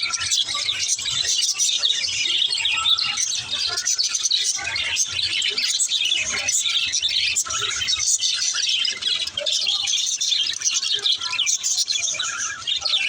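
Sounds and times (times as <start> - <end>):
budgies chattering: 0.0 - 13.0.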